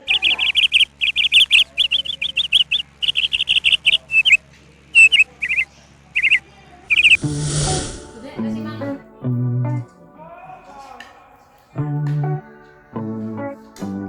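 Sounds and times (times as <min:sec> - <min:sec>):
budgerigars chirping: 0:00.0 - 0:04.4, 0:05.0 - 0:08.2.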